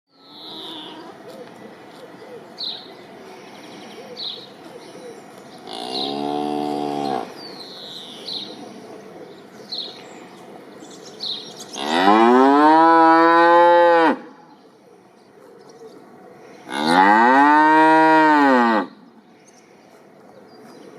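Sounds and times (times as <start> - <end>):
small birds chirping: 0.1 - 12.0, 19.0 - 20.9
cow mooing: 5.7 - 7.4, 11.8 - 14.2, 16.7 - 19.0.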